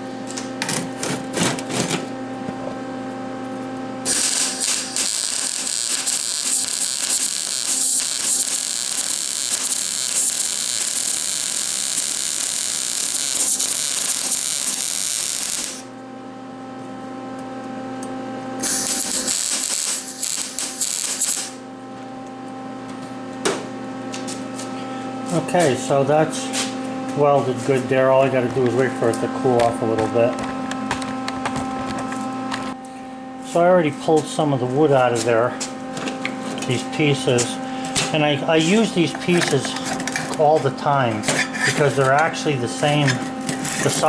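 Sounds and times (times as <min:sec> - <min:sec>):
steady hum: 0:00.0 - 0:44.0
arc welder crackling: 0:03.5 - 0:16.0, 0:18.0 - 0:22.5, 0:33.5 - 0:41.2.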